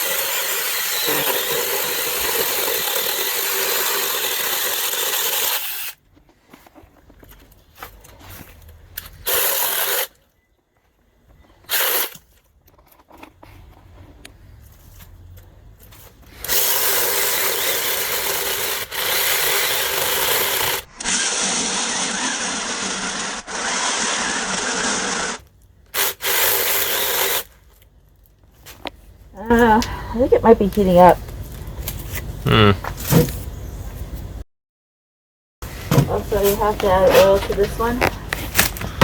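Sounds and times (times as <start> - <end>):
electric chainsaw cutting wood: 0.0 - 6.0, 16.4 - 25.4, 26.0 - 27.5.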